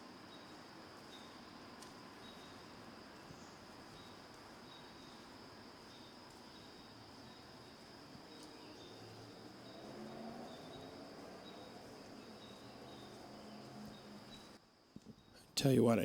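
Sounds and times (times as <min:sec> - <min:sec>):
high insect drone: 0:00.0 - 0:14.7
short insect chirps: 0:00.2 - 0:15.4
distant road traffic: 0:08.3 - 0:14.6.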